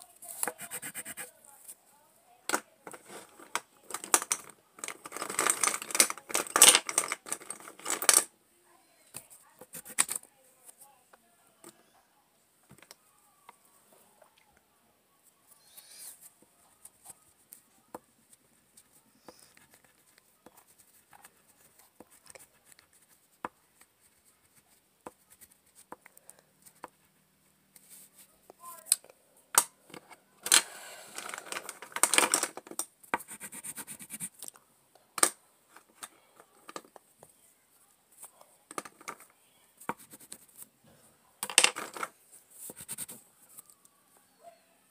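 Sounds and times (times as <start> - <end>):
pencil scratching on paper: 0.2 - 1.4, 9.6 - 10.2, 18.3 - 26.0, 33.2 - 34.4, 39.9 - 40.5, 42.6 - 43.2
fast scribbling strokes: 0.4 - 1.3, 33.2 - 34.3.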